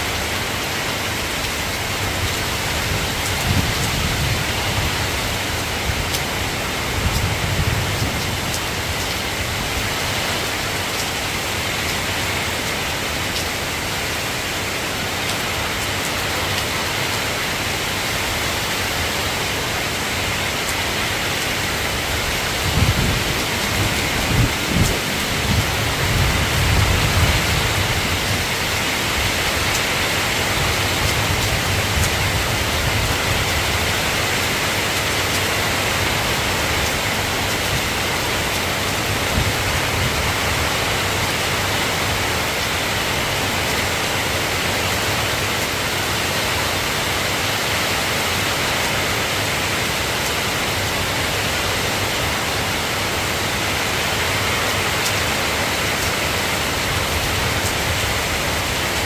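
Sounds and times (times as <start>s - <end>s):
soft rain falling: 0.0s - 59.0s
low thunder rumble: 22.0s - 29.7s.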